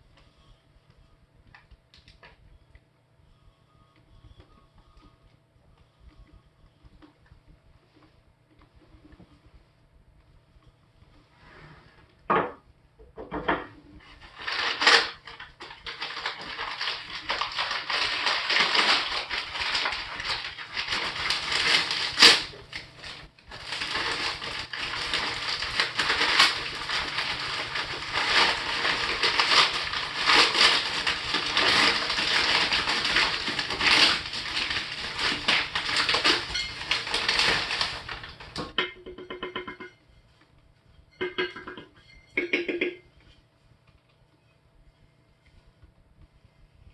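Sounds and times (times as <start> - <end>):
packaging crinkling and rustling: 14.0 - 38.8.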